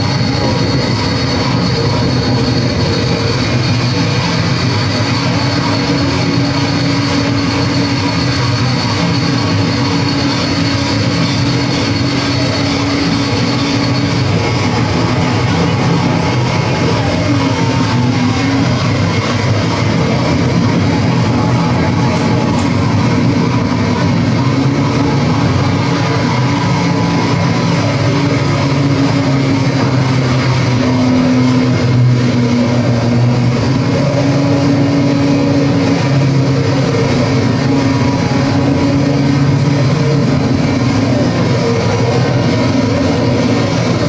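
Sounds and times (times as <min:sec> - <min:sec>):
harsh noise wall: 0:00.0 - 0:44.0
low droning tones: 0:00.0 - 0:44.0.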